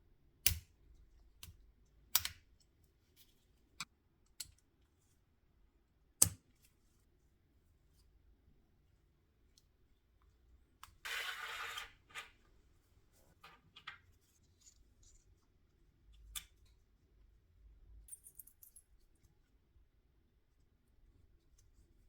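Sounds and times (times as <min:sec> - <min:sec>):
light clicks and taps of jigsaw parts: 0:00.4 - 0:05.0.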